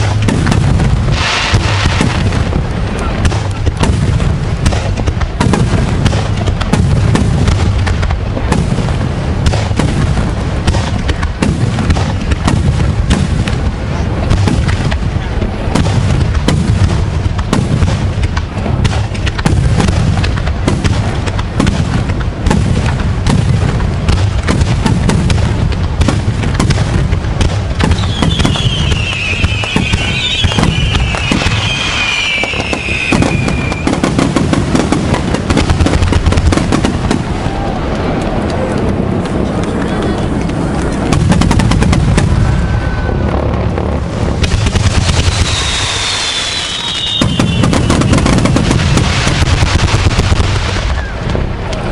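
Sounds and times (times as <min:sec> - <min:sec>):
fireworks booms and cracks: 0:00.0 - 0:51.9
high wavering whistle: 0:28.2 - 0:33.8, 0:45.3 - 0:47.6
low rumble: 0:34.4 - 0:46.8.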